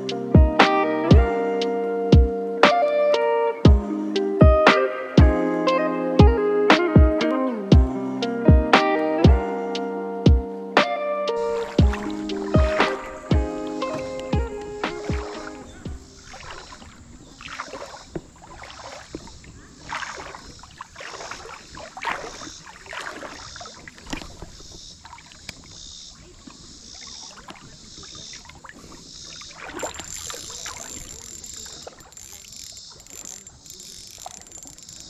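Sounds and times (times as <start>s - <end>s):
stream water splashing: 11.4s - 35.0s.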